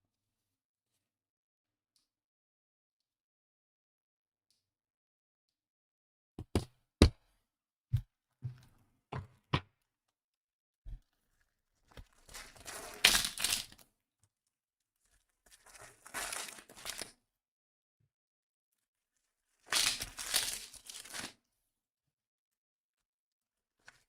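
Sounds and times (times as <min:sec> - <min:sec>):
card packaging tearing and crinkling: 0:12.3 - 0:13.8, 0:15.7 - 0:17.1, 0:19.7 - 0:21.3.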